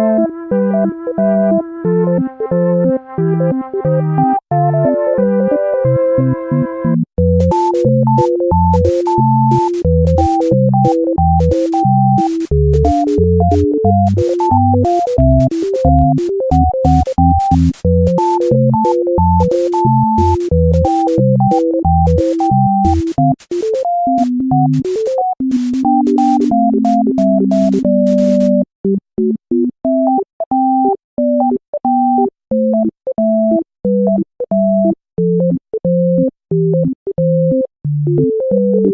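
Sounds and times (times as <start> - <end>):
bass line: 6.5 - 28.6
clicking beat: 7.2 - 28.7
electronic synthesizer tune: 7.2 - 28.7.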